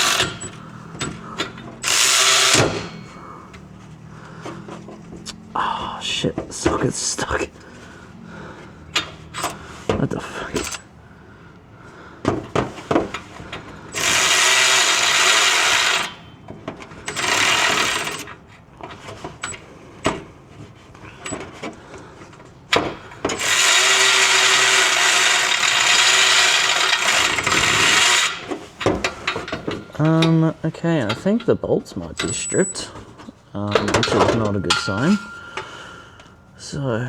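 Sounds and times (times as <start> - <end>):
metal knocks and clicks: 0.0 - 3.7, 21.2 - 36.3
power tool running: 0.0 - 3.7, 13.9 - 16.2, 17.1 - 18.3, 23.2 - 29.7.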